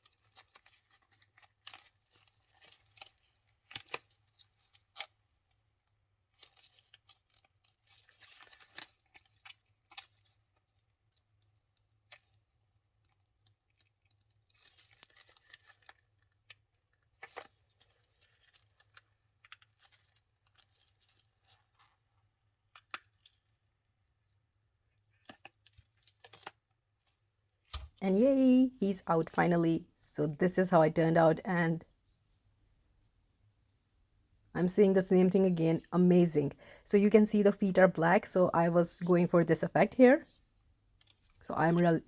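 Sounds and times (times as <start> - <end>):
silicone mold peeling crackle: 0.0 - 28.0, 40.2 - 41.8.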